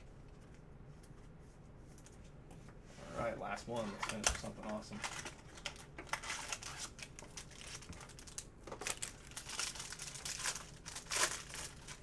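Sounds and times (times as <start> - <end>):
wrapper crinkling and tearing: 4.0 - 12.0.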